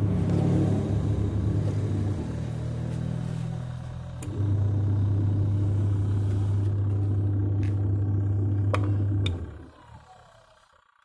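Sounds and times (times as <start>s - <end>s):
washing machine humming: 0.0s - 11.0s.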